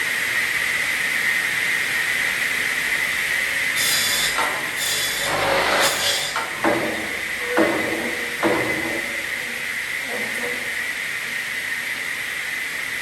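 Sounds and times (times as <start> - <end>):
circular saw blade whine: 3.0 - 9.9
saw cutting bursts: 3.7 - 9.4.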